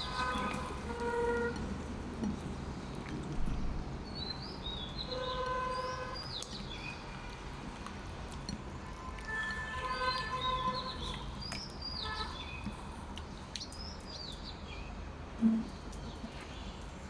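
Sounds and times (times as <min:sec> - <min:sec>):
small birds chirping: 0:04.0 - 0:07.2.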